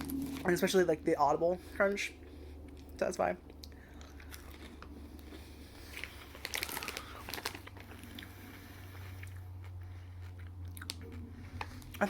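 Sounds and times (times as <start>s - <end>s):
candy crunching while chewed: 3.6s - 12.0s.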